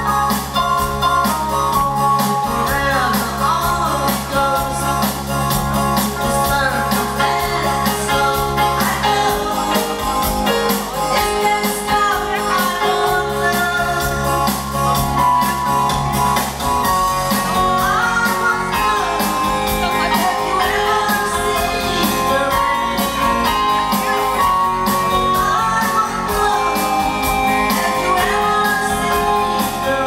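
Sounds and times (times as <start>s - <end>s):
rock song with singer: 0.0s - 30.0s.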